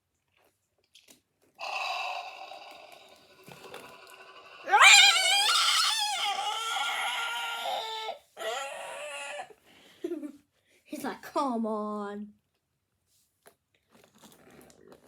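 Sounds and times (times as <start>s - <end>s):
wavering dinosaur roar: 1.6s - 9.4s.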